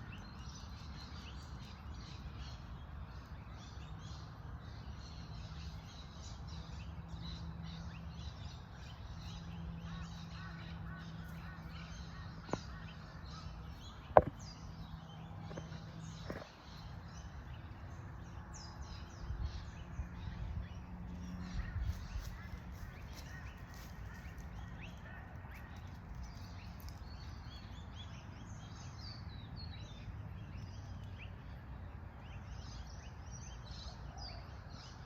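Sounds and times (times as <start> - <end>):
birds chirping in chorus: 0.0 - 35.0
sharp knocks: 14.2 - 14.4.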